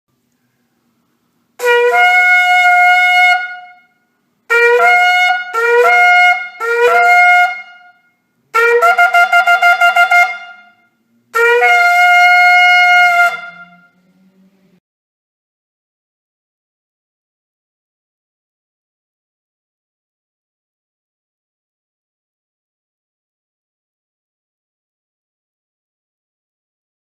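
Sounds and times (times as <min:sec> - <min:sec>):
shofar blasts: 0:01.6 - 0:14.0.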